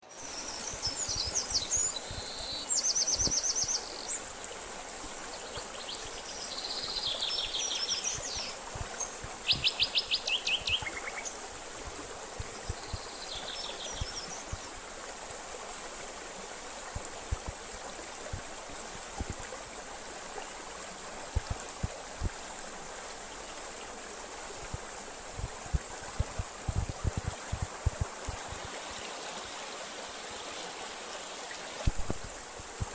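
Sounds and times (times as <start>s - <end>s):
stream rushing: 0.0s - 32.9s
songbirds trilling and chirping: 5.4s - 11.4s.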